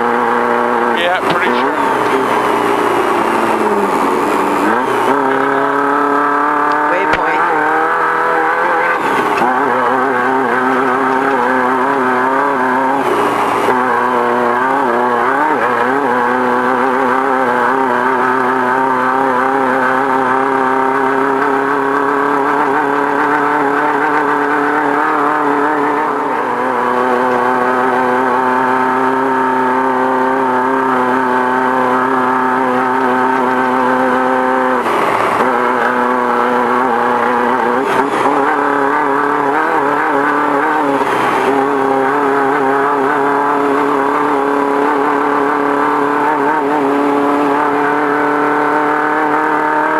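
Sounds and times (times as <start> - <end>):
race car engine at high revs: 0.0 - 49.9.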